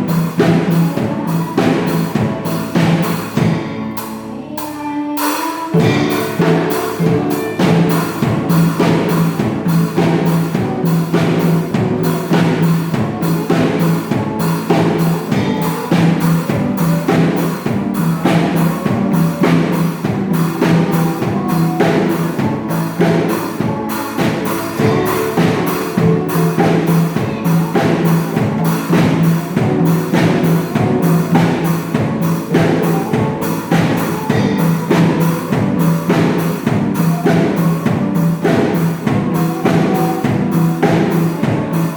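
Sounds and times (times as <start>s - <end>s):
drums steady beat: 0.0s - 41.9s
pop band playing upbeat song: 0.0s - 41.9s.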